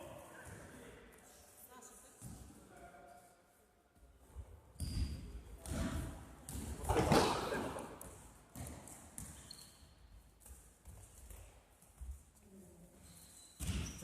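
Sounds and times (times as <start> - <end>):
basketball bouncing on floor: 8.5 - 9.5.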